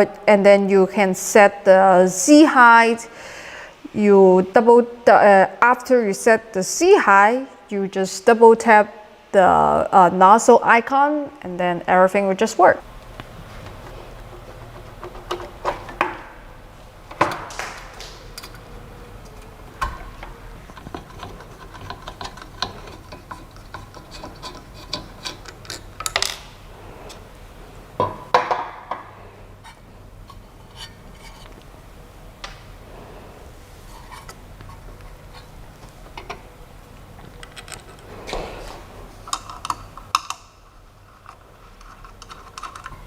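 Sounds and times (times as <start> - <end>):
faint steady hum: 0.0 - 43.0
hands clicking and tapping machine: 17.1 - 26.4.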